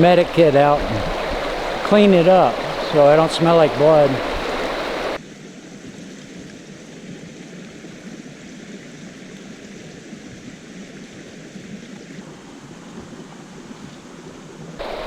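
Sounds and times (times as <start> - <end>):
creek water flowing: 0.0 - 5.2, 14.8 - 15.0.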